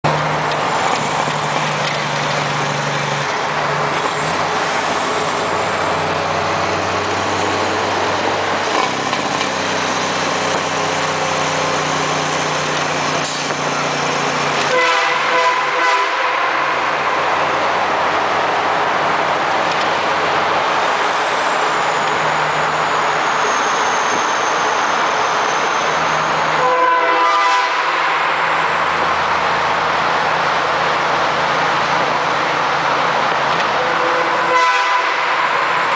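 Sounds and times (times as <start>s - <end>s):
truck engine and road noise: 0.0s - 35.9s
train horn short blasts: 14.6s - 16.8s, 26.6s - 28.4s, 33.8s - 35.8s.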